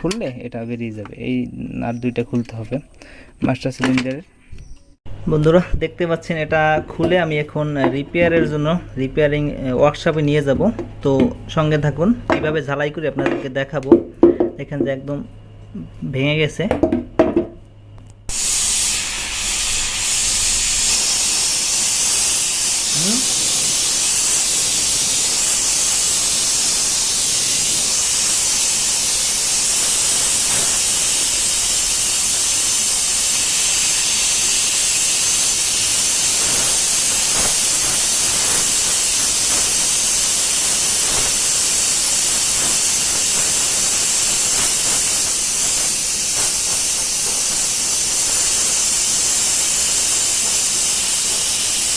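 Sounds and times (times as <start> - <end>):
arc welding frying hiss: 18.3 - 51.9.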